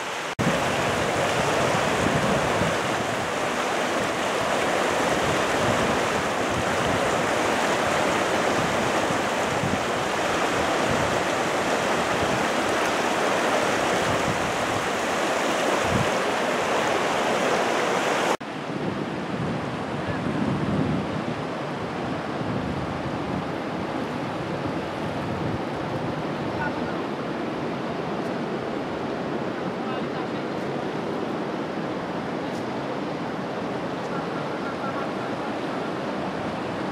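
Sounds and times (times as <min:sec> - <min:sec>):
waterfall rushing: 0:00.0 - 0:18.4.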